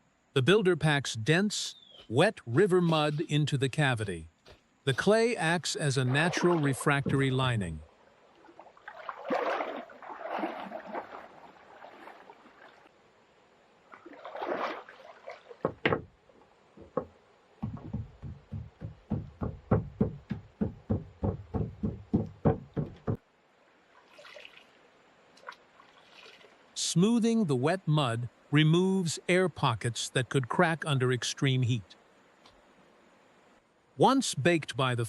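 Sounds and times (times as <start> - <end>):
wet mud scooping and smearing: 5.8 - 7.5, 8.4 - 12.9, 14.0 - 15.6
knocks: 15.6 - 16.1, 16.8 - 23.2.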